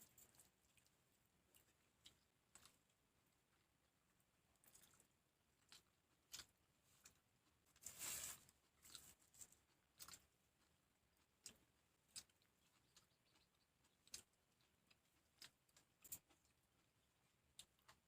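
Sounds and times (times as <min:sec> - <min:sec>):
soft chewing clicks: 0:00.0 - 0:18.0
crunchy crackle: 0:04.6 - 0:18.0.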